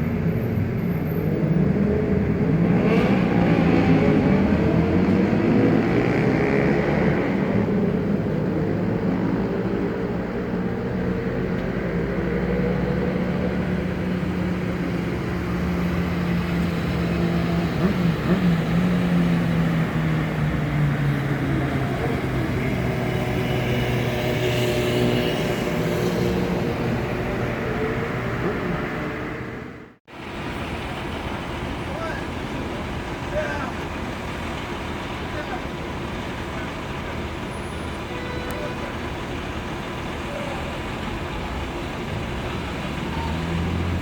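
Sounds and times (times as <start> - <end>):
car engine droning: 0.0 - 44.0
road noise: 0.0 - 44.0.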